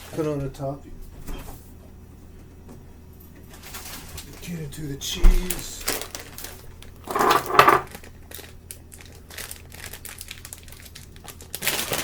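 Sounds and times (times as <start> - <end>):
plastic bag crinkling: 5.5 - 12.0.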